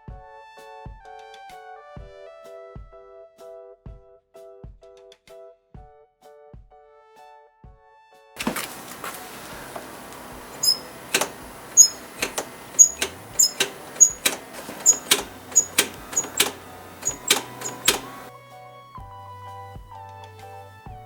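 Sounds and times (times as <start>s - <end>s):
brake lever clicks: 8.4s - 18.3s
brake squeak: 8.4s - 18.3s.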